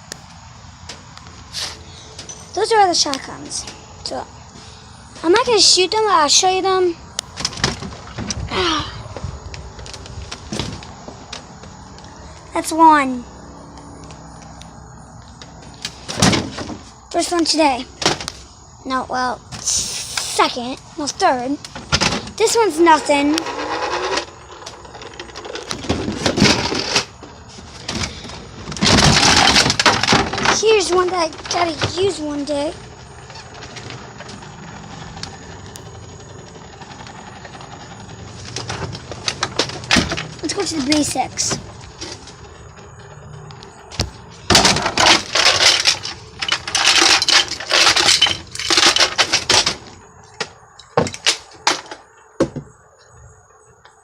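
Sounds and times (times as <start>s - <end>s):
plastic toy blasters clattering: 27.9s - 32.7s, 44.0s - 52.0s.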